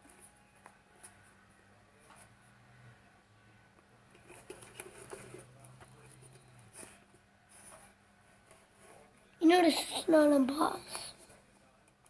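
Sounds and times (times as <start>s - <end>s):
rustling of things handled: 4.1s - 9.4s.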